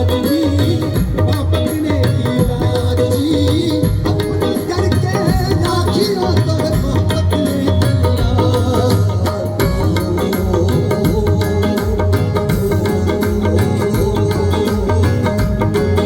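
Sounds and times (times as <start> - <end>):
steady drum beats: 0.0 - 16.0.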